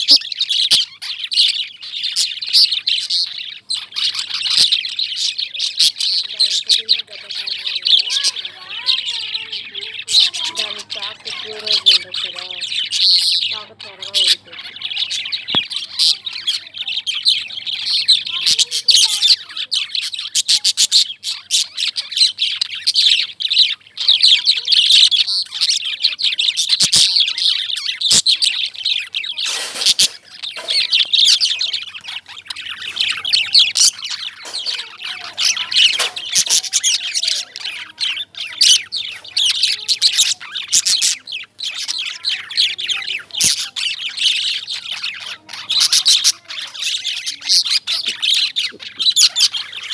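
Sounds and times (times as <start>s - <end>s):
lovebirds chirping and squeaking: 0.0s - 49.9s
scratchy burst of noise: 29.2s - 31.3s.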